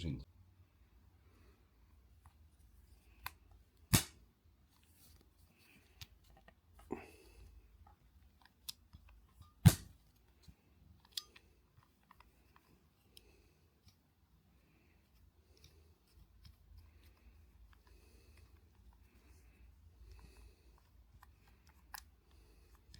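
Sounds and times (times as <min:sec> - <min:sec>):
light clicks and handling noise: 0:01.7 - 0:22.9
spring snapping when snipped: 0:03.9 - 0:04.2.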